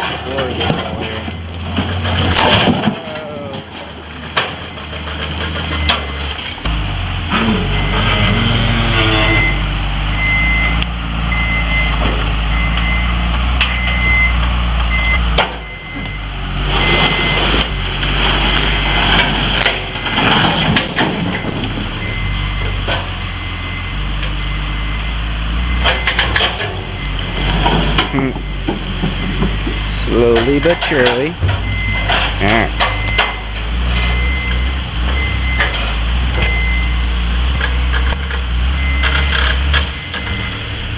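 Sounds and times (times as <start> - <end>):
timbers knocking and cracking: 0.0 - 7.5, 18.4 - 21.9, 27.5 - 34.2
diesel engine running: 0.0 - 40.9
backup alarm beeping: 7.7 - 8.2, 9.0 - 17.9, 21.4 - 22.6, 23.3 - 27.4, 30.4 - 35.7, 36.4 - 37.8, 38.7 - 40.8.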